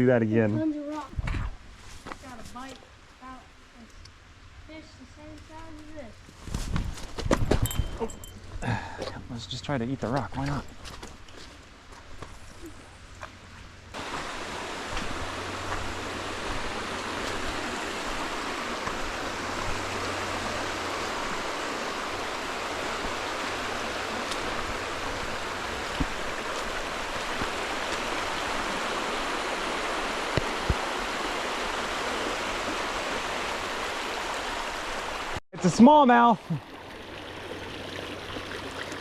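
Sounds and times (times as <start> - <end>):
creek water rushing over rocks: 13.9 - 39.0.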